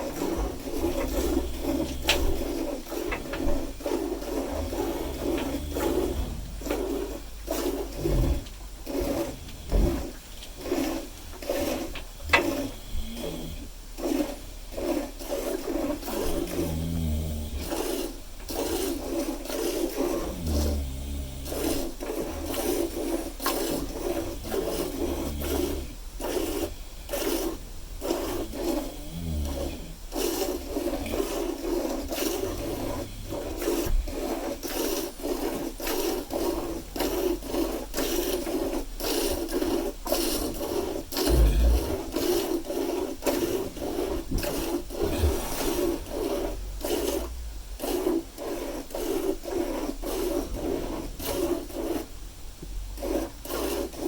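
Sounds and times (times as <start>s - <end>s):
cow snoring: 0.0s - 54.0s
milk squirting into a pail: 17.6s - 52.1s.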